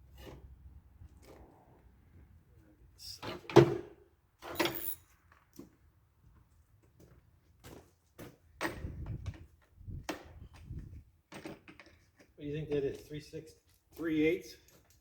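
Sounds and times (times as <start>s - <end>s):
metal tools clanking: 4.4s - 5.0s.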